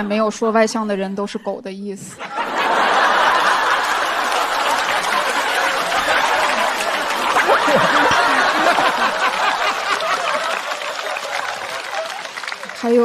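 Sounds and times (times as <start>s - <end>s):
audience laughing: 2.2s - 12.8s
scattered clapping: 2.6s - 13.0s.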